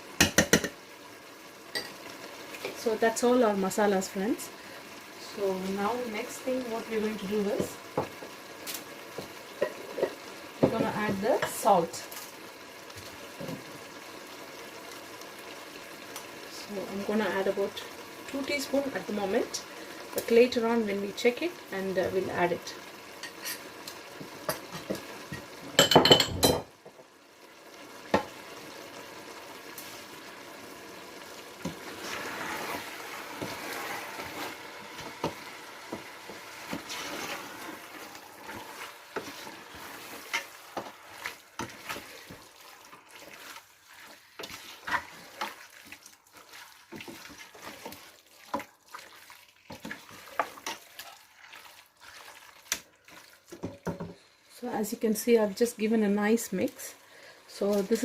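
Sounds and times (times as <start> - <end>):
faint sizzle: 0.0 - 58.0
spoon scraping a pot: 31.9 - 35.4, 36.7 - 42.4.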